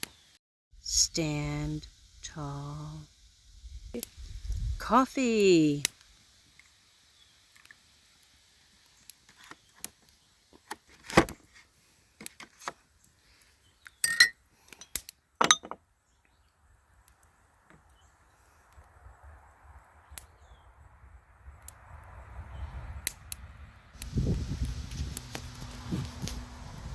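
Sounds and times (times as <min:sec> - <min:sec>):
faint steady hiss: 0:00.0 - 0:15.3
sharp clicks and clinks: 0:14.0 - 0:15.8.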